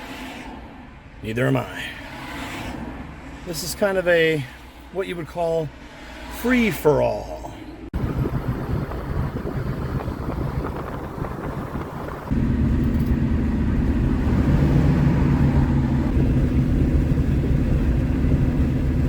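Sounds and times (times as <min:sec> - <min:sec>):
road and tyre noise: 0:00.0 - 0:19.0
car engine hum: 0:05.6 - 0:19.0.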